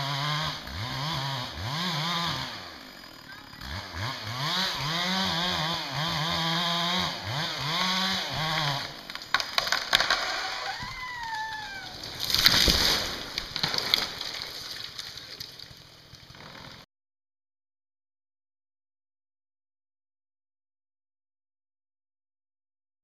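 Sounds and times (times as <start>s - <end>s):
chainsaw revving: 0.0s - 16.9s
wood splintering cracks: 2.2s - 16.8s
tree crashing down: 3.6s - 16.8s.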